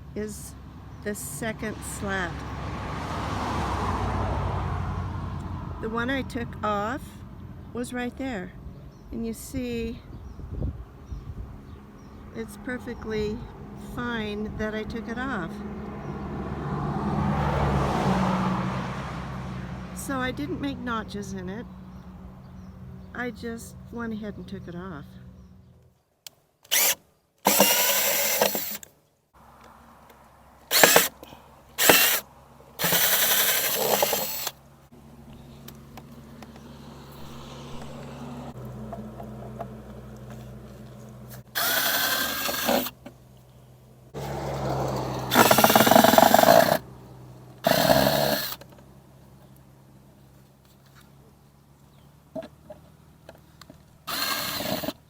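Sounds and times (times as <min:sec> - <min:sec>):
power drill whirring: 0:26.7 - 0:28.9, 0:30.7 - 0:32.2, 0:32.8 - 0:34.6, 0:37.1 - 0:38.2, 0:41.4 - 0:43.0, 0:44.2 - 0:46.8, 0:47.6 - 0:48.7, 0:54.1 - 0:55.0.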